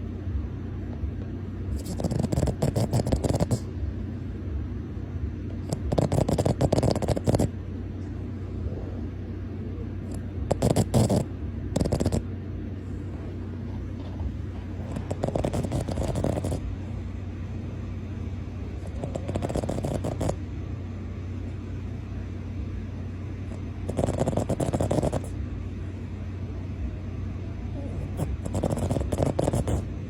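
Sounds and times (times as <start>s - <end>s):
dog snoring: 1.6s - 4.0s, 5.5s - 7.6s, 8.5s - 17.6s, 18.4s - 20.5s, 23.4s - 25.4s, 27.7s - 30.0s.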